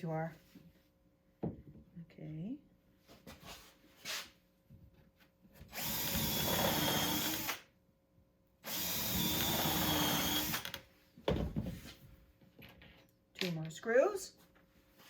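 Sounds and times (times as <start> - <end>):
power drill into wood: 5.7 - 7.7, 8.6 - 10.8.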